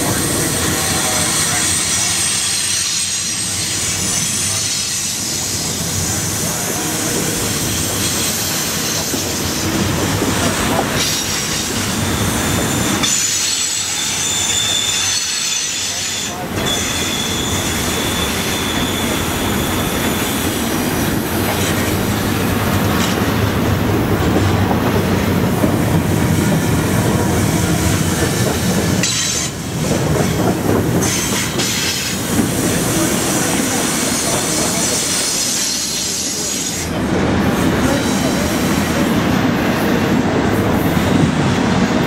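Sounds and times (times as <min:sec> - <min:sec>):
train wheels rumbling on rail: 0:00.0 - 0:42.0
high-pitched wheel squeal: 0:12.0 - 0:20.6.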